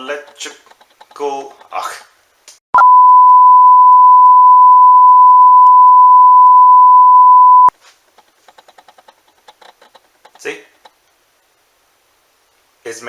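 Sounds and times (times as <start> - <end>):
loud electronic beep: 2.8 - 7.7.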